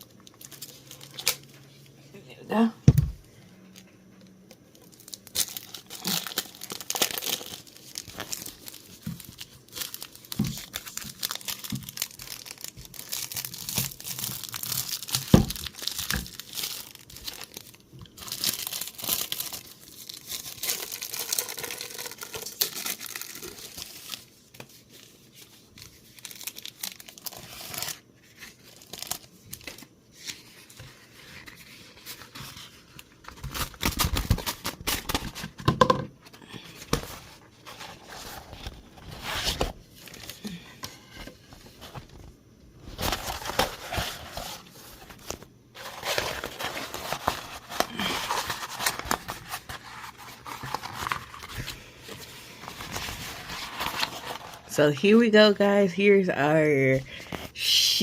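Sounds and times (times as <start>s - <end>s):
packaging tearing and crinkling: 0.0s - 1.5s, 4.8s - 24.3s, 25.8s - 30.4s, 31.3s - 35.6s, 42.9s - 54.7s.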